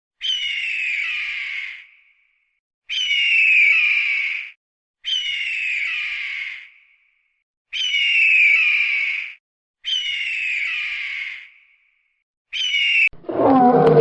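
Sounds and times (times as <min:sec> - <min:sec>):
animal's harsh drawn-out cry: 0:13.2 - 0:14.0.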